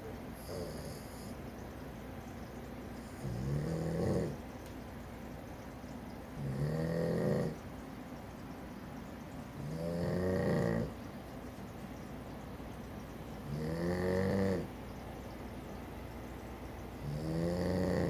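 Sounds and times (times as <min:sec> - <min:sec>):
person snoring: 0:03.2 - 0:04.4, 0:06.4 - 0:07.6, 0:09.7 - 0:11.0, 0:13.5 - 0:14.7, 0:17.0 - 0:18.0.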